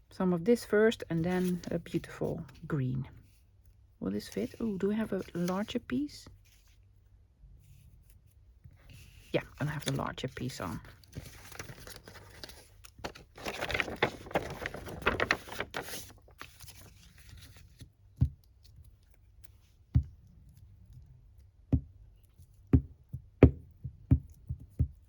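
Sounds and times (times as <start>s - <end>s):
paper rustling: 1.1s - 2.7s, 4.2s - 6.8s, 8.9s - 19.8s.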